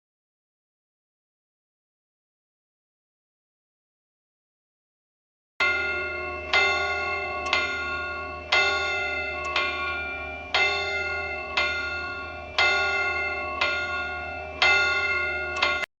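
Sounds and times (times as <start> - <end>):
bell striking: 5.6 - 15.9.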